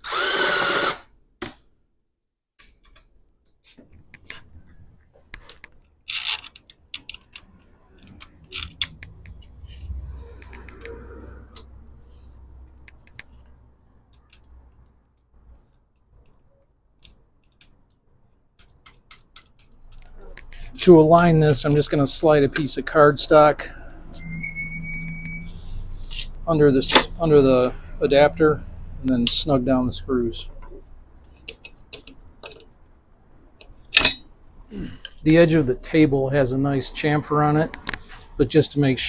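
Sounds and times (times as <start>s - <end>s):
metal parts and tools clattering: 5.4s - 9.0s, 33.7s - 34.3s.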